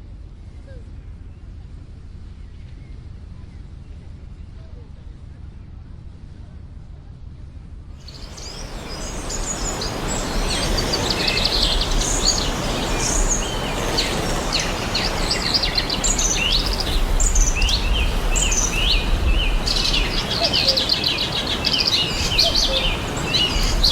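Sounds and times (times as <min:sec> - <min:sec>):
birds chirping: 0:08.0 - 0:23.9
steady rushing noise: 0:08.0 - 0:23.9.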